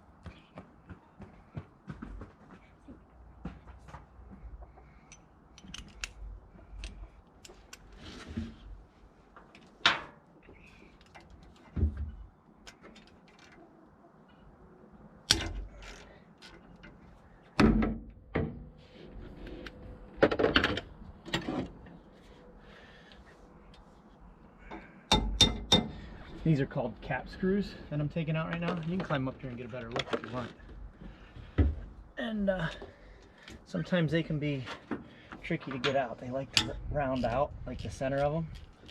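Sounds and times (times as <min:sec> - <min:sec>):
metal tools clicking and clunking: 0:35.7 - 0:37.3.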